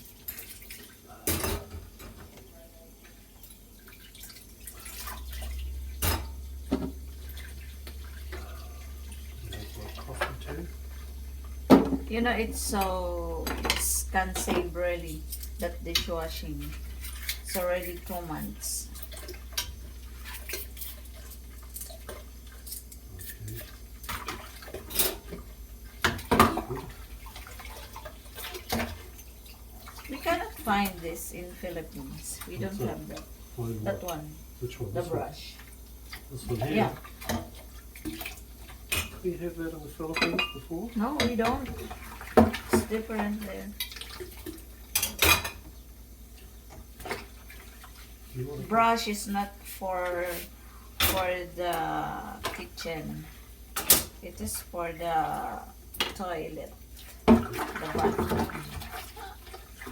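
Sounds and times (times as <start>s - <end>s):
low steady hum: 0.0s - 59.9s
dishes clinking and clattering: 0.2s - 11.0s, 11.7s - 17.6s, 19.0s - 31.0s, 40.0s - 45.8s, 51.0s - 51.4s, 57.2s - 59.9s
water dripping: 3.0s - 50.2s
dishes knocking: 11.7s - 12.1s.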